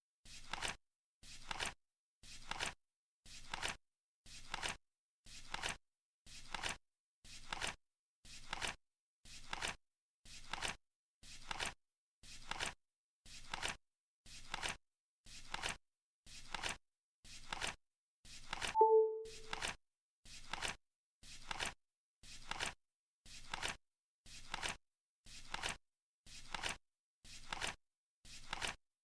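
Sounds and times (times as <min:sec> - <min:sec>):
short tone: 0:18.8 - 0:19.6.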